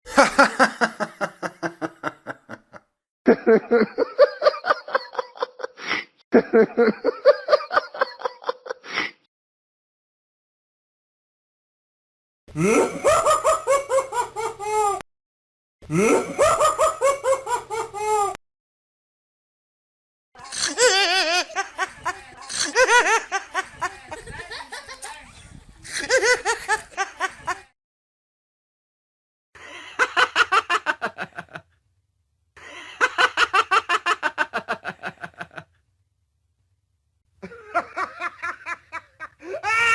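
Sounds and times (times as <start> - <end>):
man laughing: 0.1 - 8.9, 12.6 - 15.0, 15.9 - 18.4, 20.4 - 25.0, 37.4 - 39.9.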